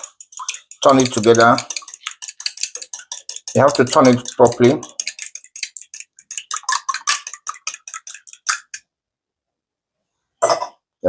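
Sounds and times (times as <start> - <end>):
utensil clicking against bowl: 0.0 - 8.8.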